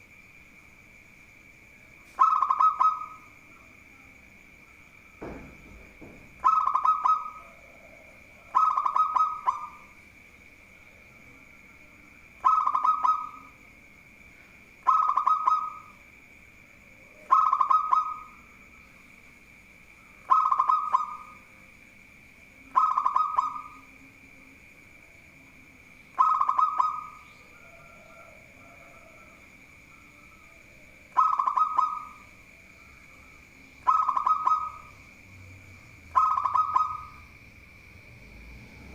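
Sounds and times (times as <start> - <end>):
dove cooing: 2.1 - 3.4, 5.2 - 10.0, 12.4 - 13.6, 14.8 - 16.0, 16.8 - 18.5, 20.1 - 21.5, 22.6 - 24.1, 26.2 - 29.4, 30.0 - 37.4
soft thump: 5.2 - 6.4.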